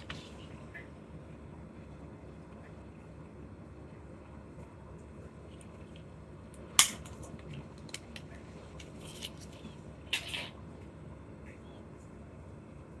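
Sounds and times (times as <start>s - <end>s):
packaging snapping: 6.8s - 9.6s.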